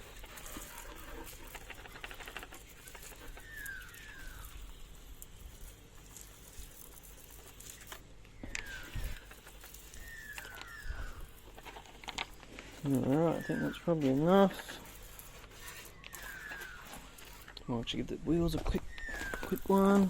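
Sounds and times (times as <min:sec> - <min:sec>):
liquid dripping and ticking: 0:00.0 - 0:17.7
bird whistling calls: 0:03.4 - 0:04.6, 0:08.4 - 0:09.2, 0:09.8 - 0:11.4, 0:13.1 - 0:14.0, 0:15.8 - 0:17.3, 0:18.7 - 0:20.0.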